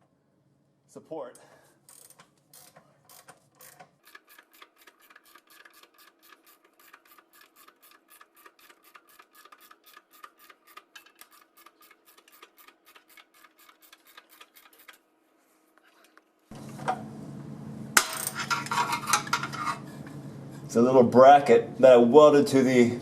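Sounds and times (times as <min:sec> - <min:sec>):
ratchet clicking: 0:01.9 - 0:15.0.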